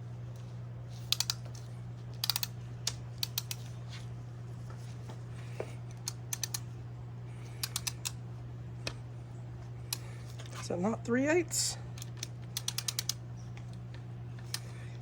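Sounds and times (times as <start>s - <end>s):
steady low hum: 0.0s - 15.0s
ratchet clicking: 1.1s - 1.5s, 2.2s - 3.7s, 6.0s - 6.7s, 7.6s - 8.2s, 12.0s - 13.2s.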